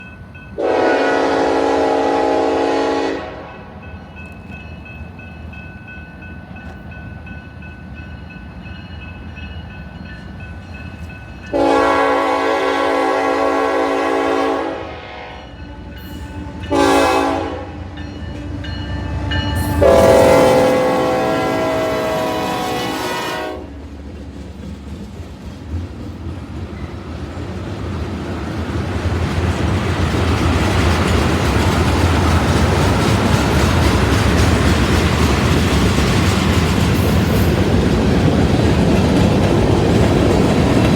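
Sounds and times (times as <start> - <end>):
train rumbling: 0.0 - 40.9
locomotive air horn blasts: 0.6 - 3.8, 11.5 - 23.8.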